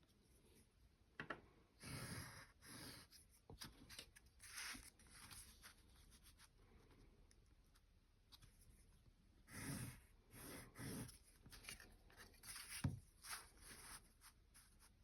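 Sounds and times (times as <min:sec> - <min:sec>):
pencil drawing on paper: 0:01.8 - 0:03.4, 0:09.4 - 0:15.0.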